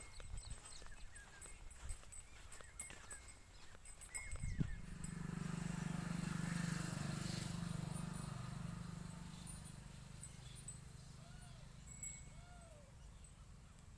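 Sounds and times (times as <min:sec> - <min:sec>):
vehicle engine humming passing: 0:04.7 - 0:13.9.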